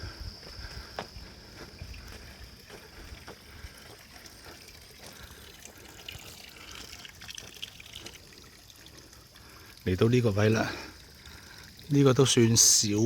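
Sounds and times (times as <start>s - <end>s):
footsteps on wet trail: 0.0s - 9.7s
faint trickling water: 0.0s - 13.0s.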